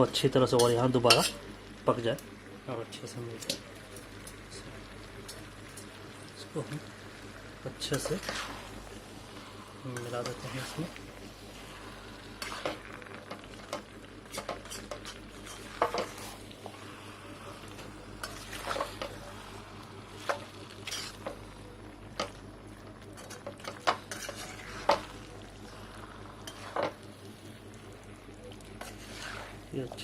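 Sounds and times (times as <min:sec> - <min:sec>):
food sizzling: 0:00.0 - 0:30.0
spoon scraping a pan: 0:00.6 - 0:01.4, 0:07.9 - 0:08.8, 0:10.0 - 0:16.8, 0:17.4 - 0:19.4, 0:20.2 - 0:21.4, 0:23.2 - 0:25.2, 0:26.4 - 0:27.0, 0:28.8 - 0:29.6.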